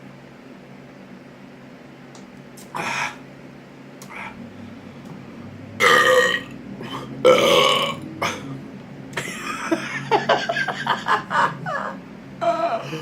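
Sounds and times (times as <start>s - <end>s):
man burping loudly: 5.8s - 8.5s.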